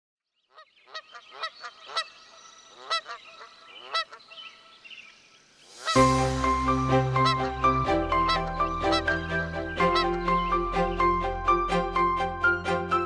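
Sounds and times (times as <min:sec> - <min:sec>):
geese honking: 0:00.5 - 0:04.4, 0:05.8 - 0:11.3
loud background music: 0:05.9 - 0:13.0.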